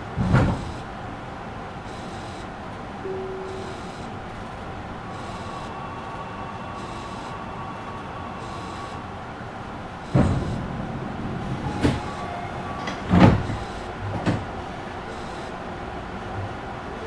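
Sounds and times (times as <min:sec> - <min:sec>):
train car hum: 0:00.0 - 0:17.0
knocks and thumps: 0:10.1 - 0:14.6.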